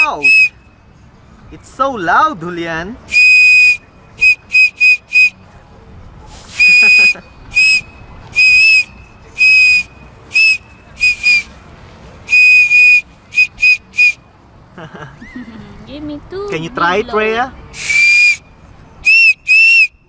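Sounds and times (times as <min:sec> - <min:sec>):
toy whistle toots: 0:00.0 - 0:00.6, 0:03.1 - 0:05.4, 0:06.6 - 0:11.5, 0:12.3 - 0:14.2, 0:17.8 - 0:18.4, 0:19.0 - 0:20.0.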